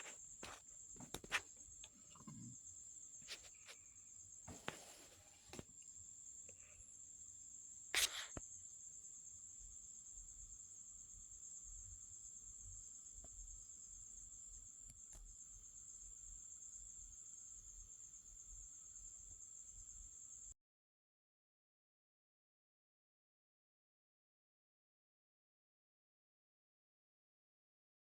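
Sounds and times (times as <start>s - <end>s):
cricket trilling: 0.0s - 20.6s.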